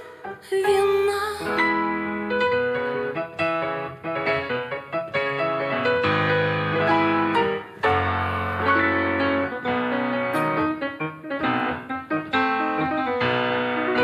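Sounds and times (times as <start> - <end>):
piano music: 0.0 - 14.0.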